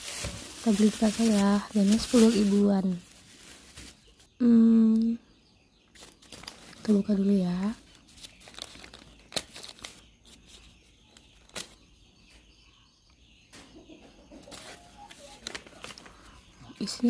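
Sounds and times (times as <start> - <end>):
food wrapping rustling and crinkling: 0.0 - 4.4, 5.9 - 11.8, 14.5 - 17.0.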